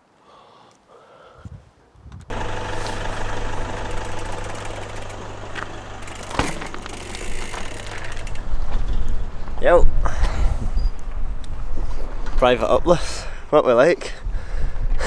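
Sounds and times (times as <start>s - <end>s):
vehicle engine humming: 2.3s - 9.5s.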